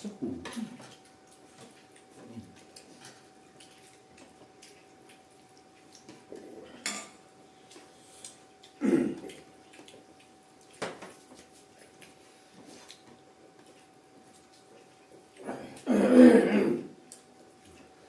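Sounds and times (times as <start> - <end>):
faint steady hum: 0.0 - 18.0
utensils clinking against dishes: 6.7 - 7.2.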